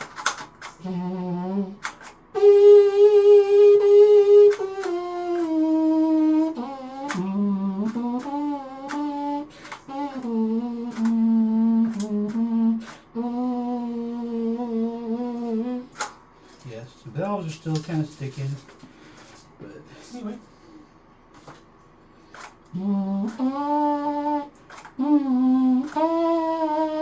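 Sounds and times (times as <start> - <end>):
trumpet playing slow melody: 0.8 - 1.8, 2.4 - 15.9
short clicks: 10.9 - 11.2.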